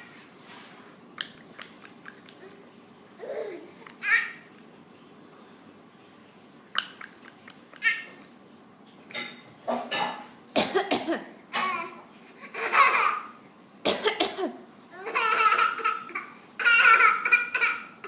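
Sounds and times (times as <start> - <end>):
young child coughing: 10.0 - 12.0, 13.8 - 14.6.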